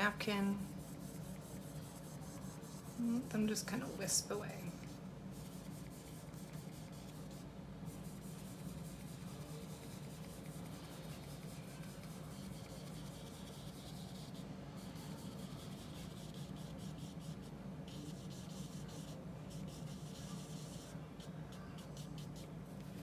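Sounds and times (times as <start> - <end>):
brush stroking paint on paper: 0.0 - 23.0
steady low hum: 0.0 - 23.0.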